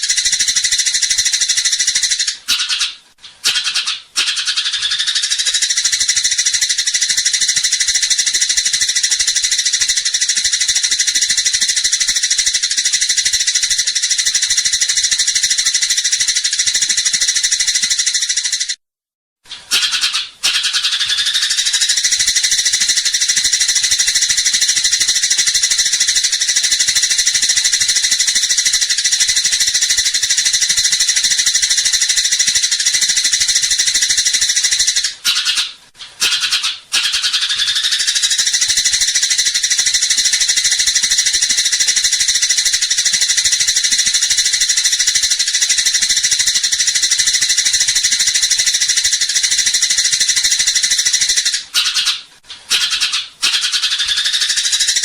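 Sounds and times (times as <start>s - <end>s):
sparrow chattering: 0.0s - 18.8s, 19.7s - 55.0s.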